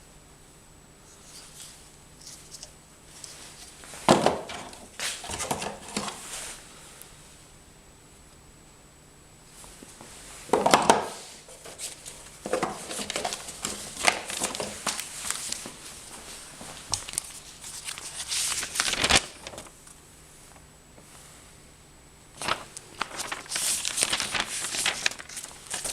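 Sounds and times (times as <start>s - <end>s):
packaging crinkling and rustling: 10.5s - 19.9s, 22.4s - 25.9s.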